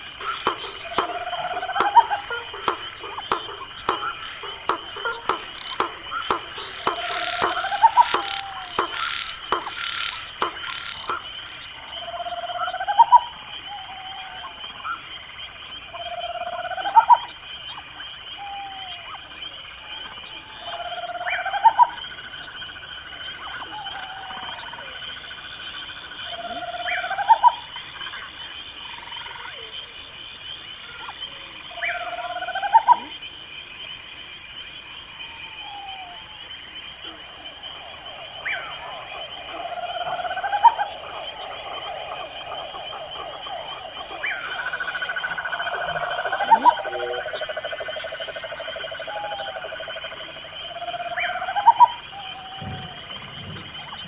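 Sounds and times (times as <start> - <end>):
faint high ticking: 0.0 - 11.6
crickets trilling: 0.0 - 54.0.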